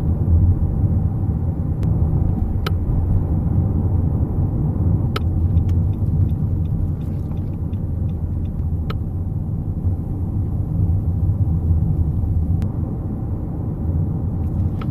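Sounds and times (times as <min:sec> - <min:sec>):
car road and engine rumble: 0:00.0 - 0:14.9.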